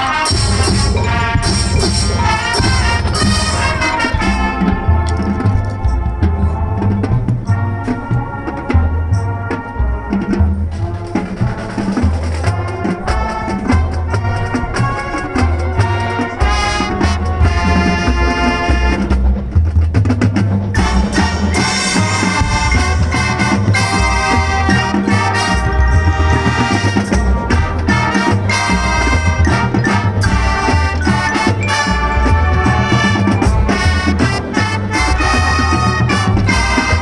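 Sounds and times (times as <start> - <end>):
marching band playing: 0.0 - 37.0.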